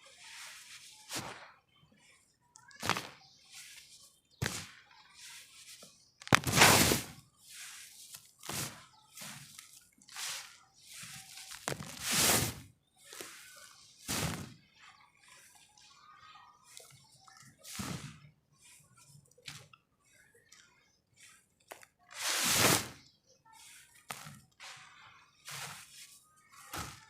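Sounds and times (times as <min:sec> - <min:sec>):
dirt lumps crunching: 0:02.8 - 0:15.6, 0:16.6 - 0:20.2, 0:21.2 - 0:27.0.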